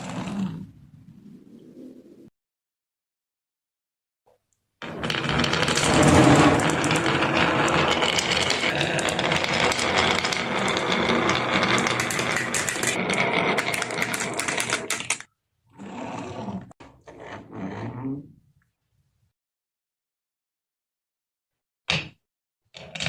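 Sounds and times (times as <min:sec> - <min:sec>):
marbles rattling down wooden run: 0:04.8 - 0:15.3.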